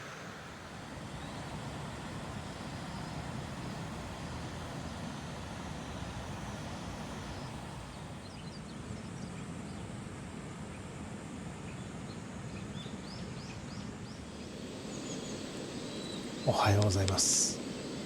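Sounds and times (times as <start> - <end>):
low rushing background noise: 0.0 - 8.6, 11.8 - 18.0
small birds chirping: 12.6 - 18.0.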